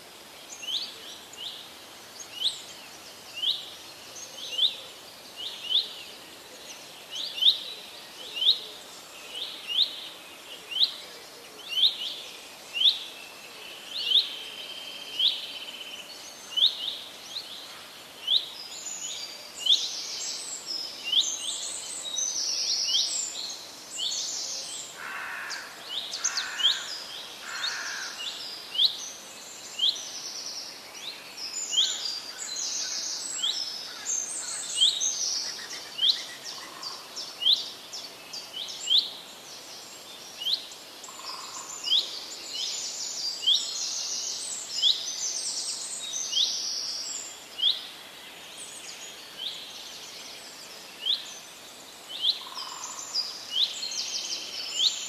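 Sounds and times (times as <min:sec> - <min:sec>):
soft background hiss: 0:00.0 - 0:55.0.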